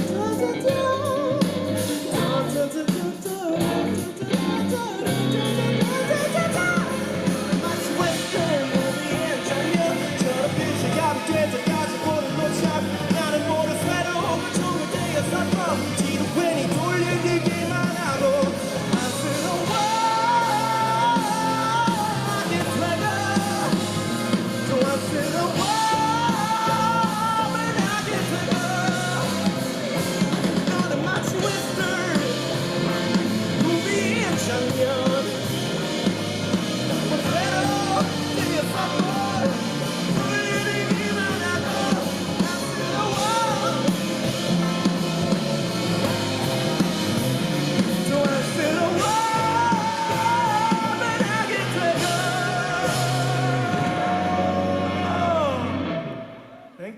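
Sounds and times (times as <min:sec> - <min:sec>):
live rock band playing: 0:00.0 - 0:56.9
person singing: 0:00.0 - 0:56.9.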